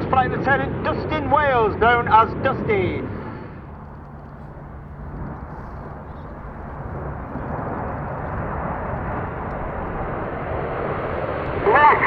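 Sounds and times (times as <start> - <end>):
jet engines rushing: 3.6 - 12.0.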